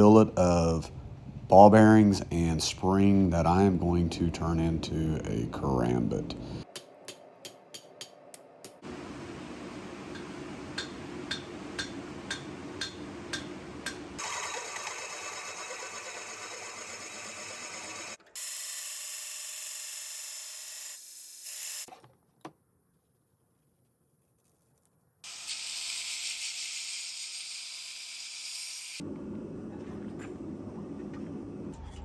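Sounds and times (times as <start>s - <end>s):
power tool humming with clicks: 14.2s - 20.3s.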